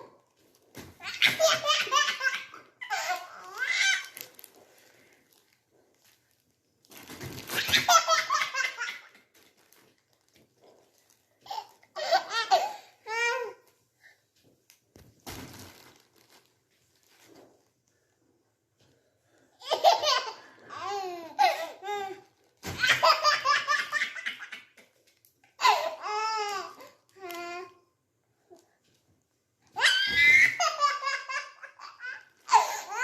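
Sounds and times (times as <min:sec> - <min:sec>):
baby laughing: 0:01.0 - 0:04.2, 0:19.6 - 0:22.1.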